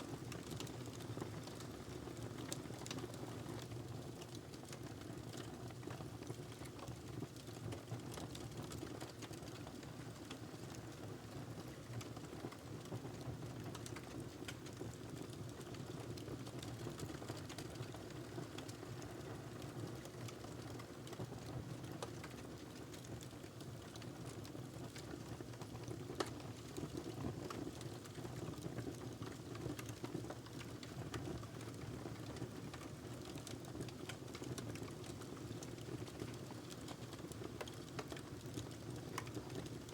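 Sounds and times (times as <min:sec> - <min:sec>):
fire crackles and pops: 0:00.1 - 0:11.0, 0:11.6 - 0:39.9.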